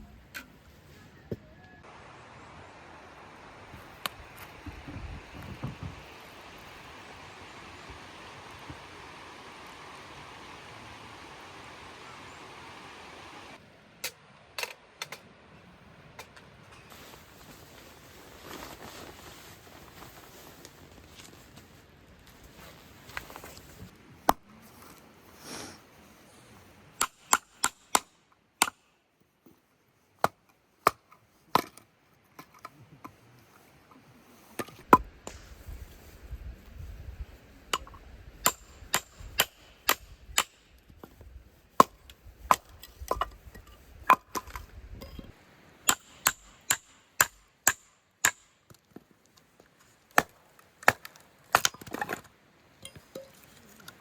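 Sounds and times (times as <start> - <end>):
blade striking wood: 27.0 - 28.8, 37.8 - 41.1, 45.9 - 48.8.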